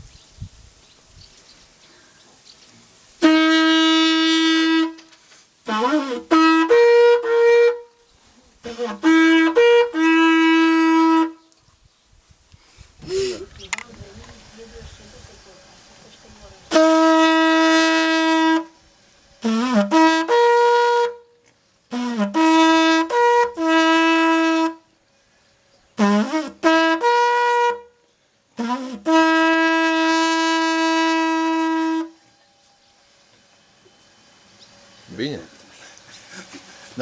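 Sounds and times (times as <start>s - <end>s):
bark alphorn blown: 3.2s - 11.4s, 16.7s - 18.8s, 19.4s - 21.3s, 21.9s - 24.9s, 26.0s - 28.0s, 28.6s - 32.7s.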